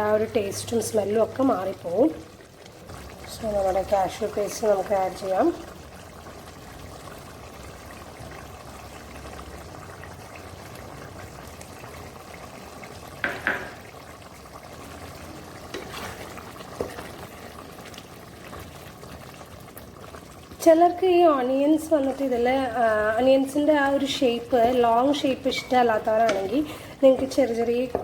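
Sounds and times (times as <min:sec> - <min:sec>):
curry bubbling in a pan: 0:00.0 - 0:28.0
spoon scraping a pan: 0:15.7 - 0:17.2.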